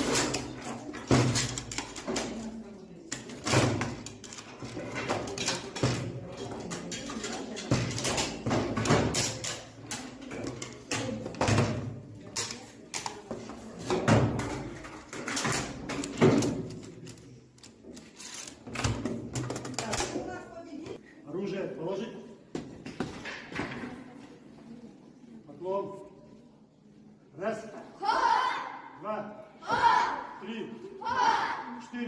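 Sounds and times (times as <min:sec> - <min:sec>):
rifles clacking and knocking: 0:00.0 - 0:20.5.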